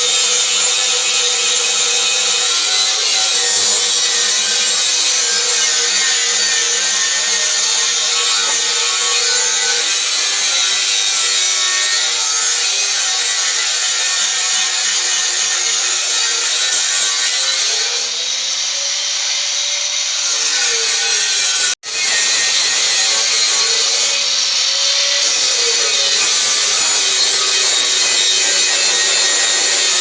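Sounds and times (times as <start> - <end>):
power tool working on wood: 0.0 - 30.0.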